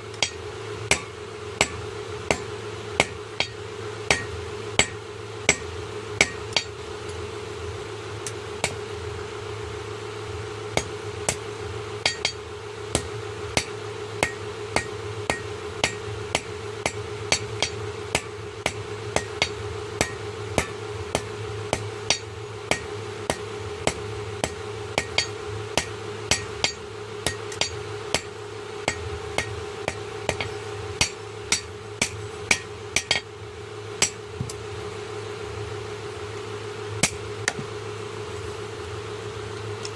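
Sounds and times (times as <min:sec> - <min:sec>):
steady low hum: 0:00.0 - 0:39.9
hammer striking steel on anvil: 0:00.1 - 0:06.8, 0:08.2 - 0:08.8, 0:10.8 - 0:11.4, 0:12.0 - 0:33.3, 0:34.0 - 0:34.6, 0:37.0 - 0:37.7.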